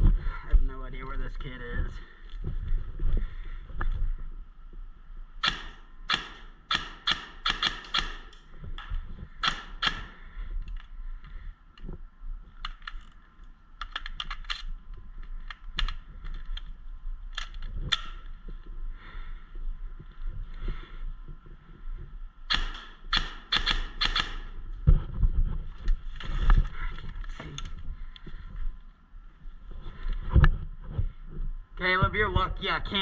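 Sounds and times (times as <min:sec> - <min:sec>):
airsoft gun shots: 0:05.4 - 0:08.4, 0:09.4 - 0:10.2, 0:22.5 - 0:24.5.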